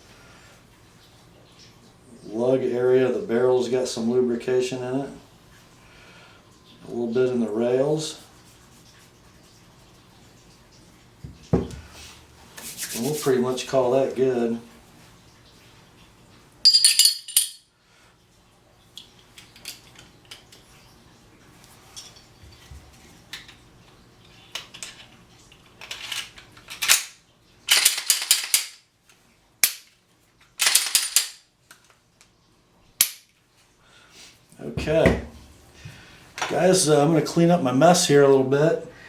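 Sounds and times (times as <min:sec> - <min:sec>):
pistol slide clicking and clattering: 0:25.8 - 0:28.8, 0:29.6 - 0:30.0, 0:30.6 - 0:31.4, 0:33.0 - 0:33.3.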